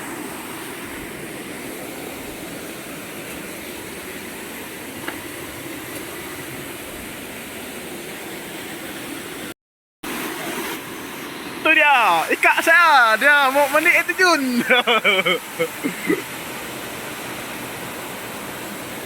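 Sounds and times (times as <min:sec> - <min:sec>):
waterfall and river water rushing: 0:00.0 - 0:19.0.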